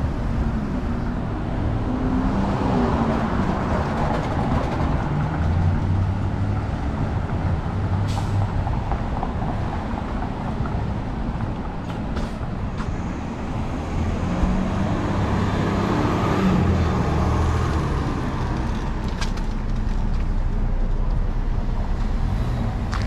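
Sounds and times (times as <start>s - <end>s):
low rumble of traffic: 0.0s - 23.0s.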